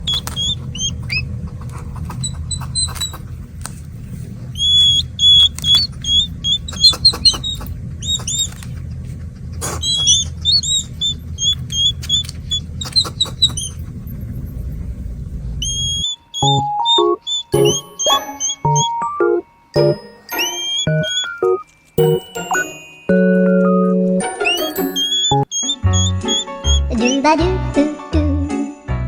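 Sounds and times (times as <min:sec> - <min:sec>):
hedgehog squeaky chirps: 0:00.0 - 0:03.5, 0:04.5 - 0:08.8, 0:09.6 - 0:13.9, 0:15.6 - 0:22.8, 0:24.2 - 0:27.7
sharp clicks: 0:00.0 - 0:03.8, 0:04.6 - 0:08.8, 0:09.6 - 0:13.7
low rumble: 0:13.8 - 0:16.0.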